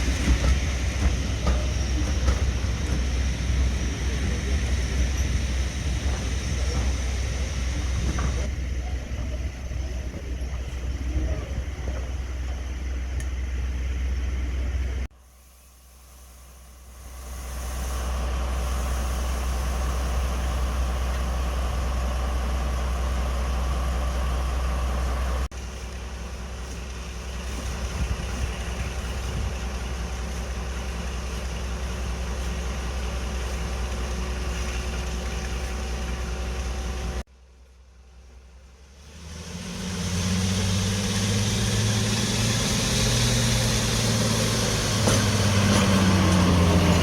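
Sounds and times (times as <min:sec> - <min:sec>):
diesel engine with held tone: 0:00.0 - 0:47.0
diesel locomotive engine running: 0:00.0 - 0:47.0.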